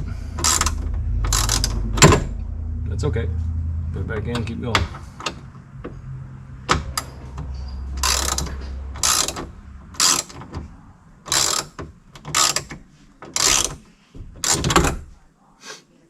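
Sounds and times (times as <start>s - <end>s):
hand ratchet clicking: 0.4s - 1.8s, 8.0s - 10.5s, 11.3s - 13.8s.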